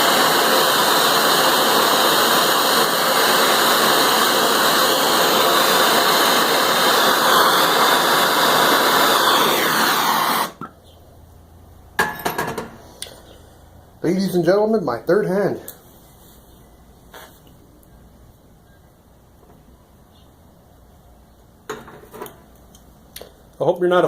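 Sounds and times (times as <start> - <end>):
torch flame hissing: 0.0 - 10.7.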